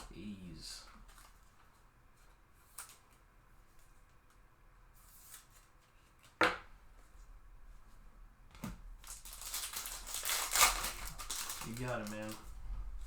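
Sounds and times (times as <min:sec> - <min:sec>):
trading cards shuffled: 0:10.0 - 0:12.5.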